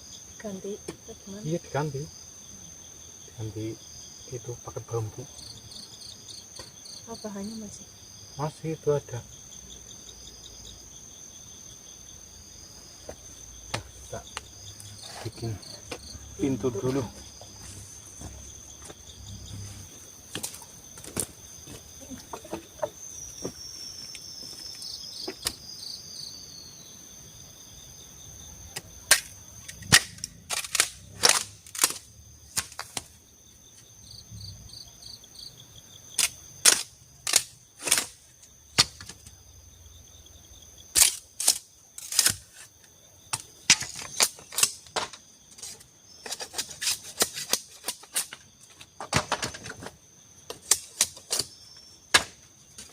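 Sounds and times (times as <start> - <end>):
forest insects chirring: 0.0 - 52.9
strikes on bamboo: 13.1 - 14.5, 28.7 - 33.2, 36.2 - 39.4, 40.9 - 52.9.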